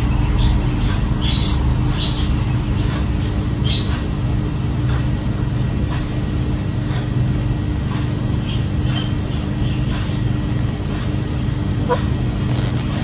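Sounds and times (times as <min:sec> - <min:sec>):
low hum: 0:09.2 - 0:13.0
parrot chirping: 0:11.8 - 0:12.1.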